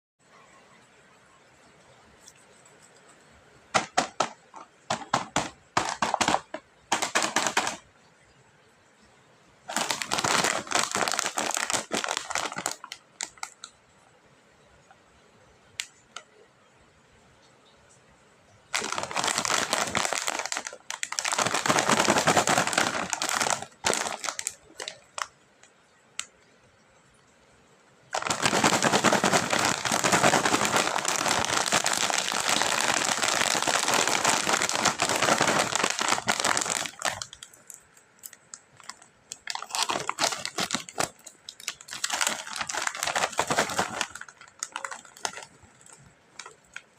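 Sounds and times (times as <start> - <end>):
snack packaging crinkling: 2.2 - 7.8, 9.7 - 13.8, 18.7 - 25.7, 28.1 - 46.9.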